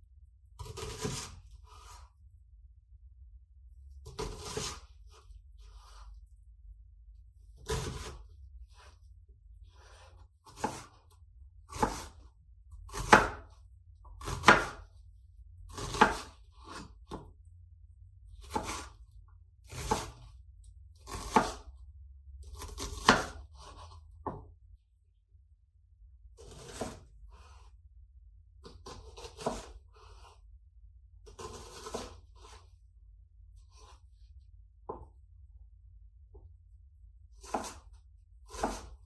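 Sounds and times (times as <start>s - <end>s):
knife cutting on a board: 0.6s - 2.1s, 4.0s - 6.2s, 7.5s - 9.1s, 9.7s - 12.3s, 12.9s - 13.6s, 14.2s - 15.0s, 15.7s - 17.4s, 18.4s - 19.0s, 19.6s - 20.3s, 21.0s - 21.8s, 22.4s - 24.4s, 26.4s - 27.8s, 28.6s - 30.4s, 31.2s - 32.8s, 33.6s - 35.2s, 37.4s - 39.0s.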